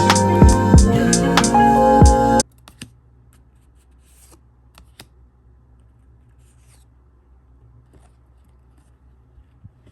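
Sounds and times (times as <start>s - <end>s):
background music: 0.0s - 2.4s.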